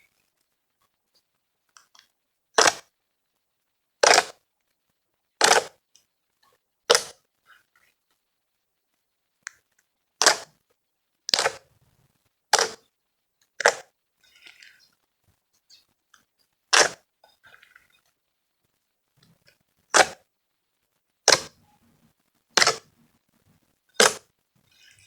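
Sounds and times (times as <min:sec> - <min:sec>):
slime popping squelches: 0:11.3 - 0:11.7, 0:12.5 - 0:12.9, 0:16.7 - 0:17.8, 0:19.9 - 0:20.2, 0:22.5 - 0:23.0, 0:24.0 - 0:25.0.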